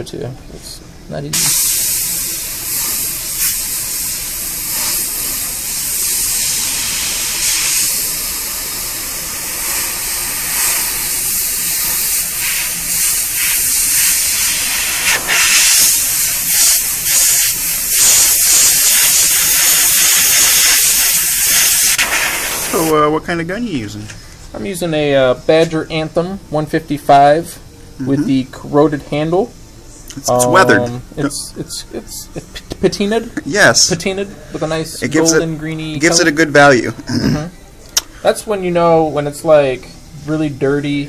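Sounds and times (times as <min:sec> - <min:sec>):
airbrush hissing: 0:01.3 - 0:23.0.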